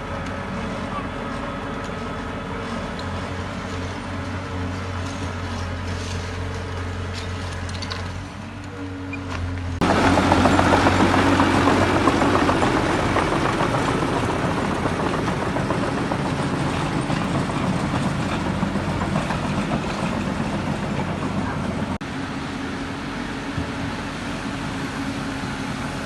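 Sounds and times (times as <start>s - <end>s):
diesel machinery engine running: 0.0s - 26.0s.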